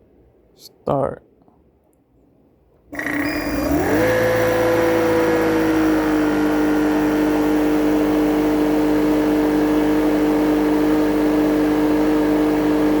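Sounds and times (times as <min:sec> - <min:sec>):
compressor humming: 0:02.9 - 0:13.0.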